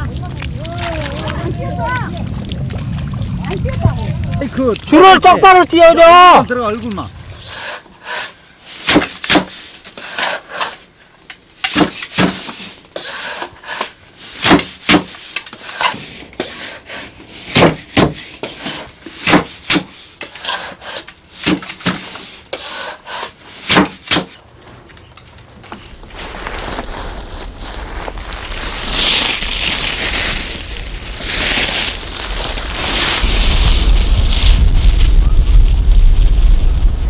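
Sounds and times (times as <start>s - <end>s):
low steady rumble: 0.0s - 7.5s, 24.4s - 37.0s.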